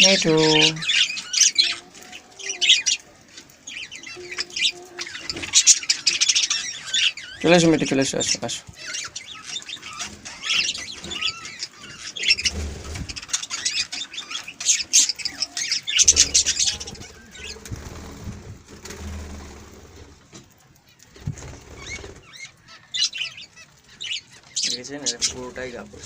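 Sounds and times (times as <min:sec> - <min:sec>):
budgerigars chirping and chattering: 0:00.0 - 0:20.2, 0:20.8 - 0:26.0
wing flapping: 0:08.7 - 0:23.9.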